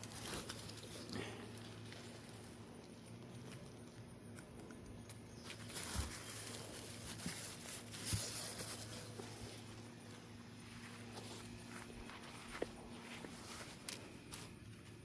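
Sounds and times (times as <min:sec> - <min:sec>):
low steady hum: 0:00.0 - 0:15.0
rustling handling noise: 0:00.0 - 0:15.0.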